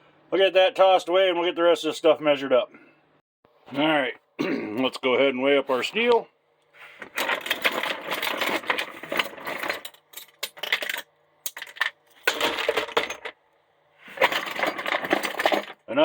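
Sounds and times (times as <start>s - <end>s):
metal parts clattering: 7.0s - 13.4s, 14.1s - 15.8s.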